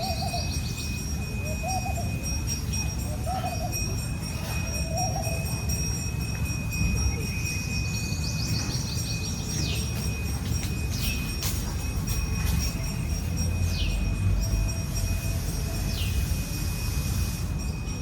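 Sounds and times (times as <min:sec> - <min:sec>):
owl hooting: 0:00.0 - 0:02.3
chirping trill: 0:00.0 - 0:18.0.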